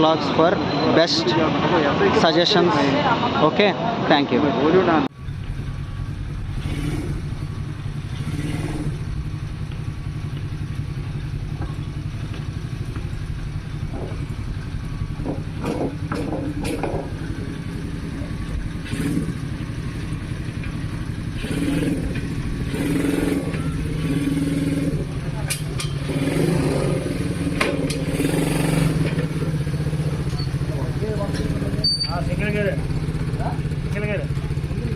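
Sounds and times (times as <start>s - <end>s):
motorcycle engine idling: 5.2s - 34.9s.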